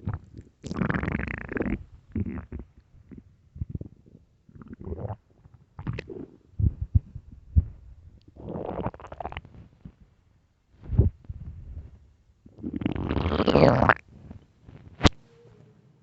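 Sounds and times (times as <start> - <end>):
stomach growling and gurgling: 0.0 - 10.0, 12.5 - 15.2.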